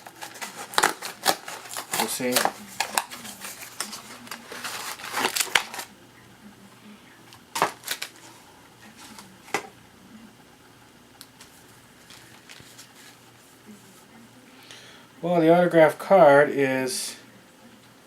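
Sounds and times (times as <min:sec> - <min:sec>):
packaging crinkling and rustling: 0:00.0 - 0:05.9, 0:07.5 - 0:08.3, 0:12.0 - 0:13.2.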